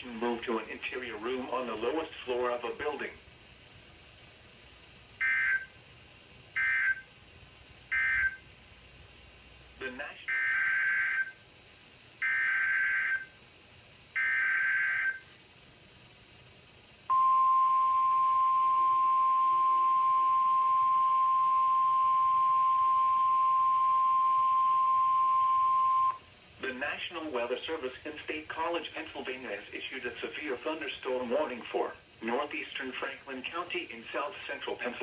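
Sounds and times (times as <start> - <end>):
steady warning alarm tone: 5.2 - 5.7, 6.6 - 7.1, 7.9 - 8.4, 10.3 - 11.4, 12.2 - 13.3, 14.2 - 15.2, 17.1 - 26.2.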